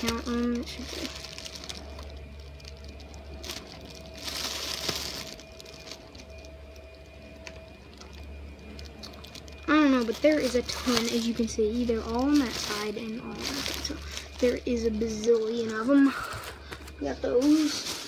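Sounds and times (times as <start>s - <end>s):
packaging rustle: 0.0s - 18.0s
steady low hum: 0.0s - 18.0s
packaging clicks and taps: 15.5s - 17.0s.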